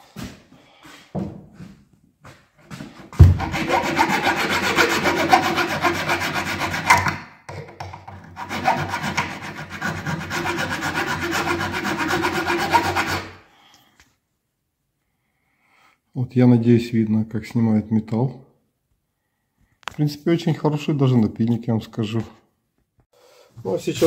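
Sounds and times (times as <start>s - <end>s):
file rasping on metal: 3.3s - 7.2s, 8.2s - 13.4s.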